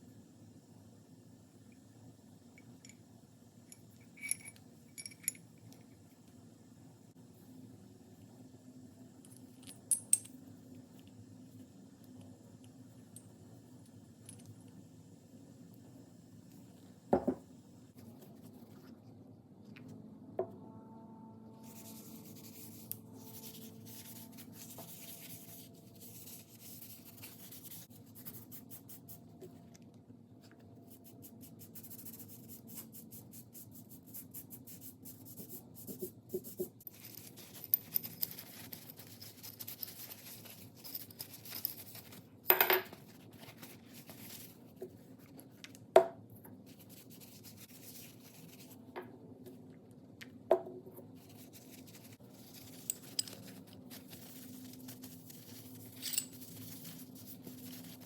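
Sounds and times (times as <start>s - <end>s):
rubbing and scratching on metal: 51.2s - 58.0s.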